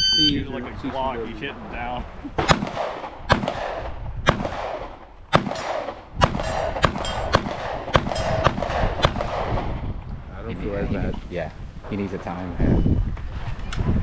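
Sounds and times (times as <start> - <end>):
handgun shots with echo: 2.4 - 9.6.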